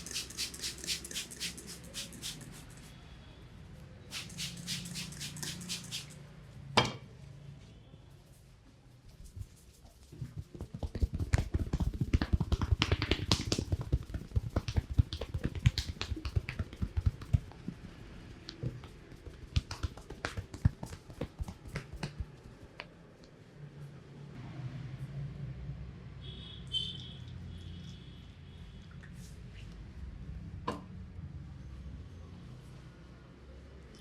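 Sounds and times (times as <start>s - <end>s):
hands slapping and tapping head: 10.3s - 17.8s, 18.5s - 22.9s.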